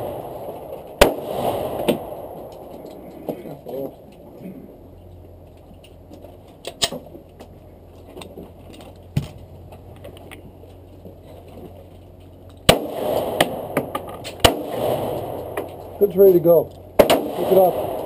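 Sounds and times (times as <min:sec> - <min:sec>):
handgun shots: 0:12.7 - 0:15.7, 0:17.0 - 0:18.0.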